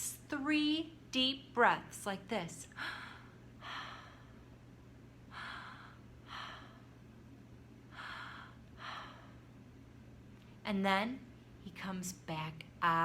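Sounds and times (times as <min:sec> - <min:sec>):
woman breathing deeply: 0:02.7 - 0:04.6, 0:05.2 - 0:07.1, 0:07.9 - 0:09.6.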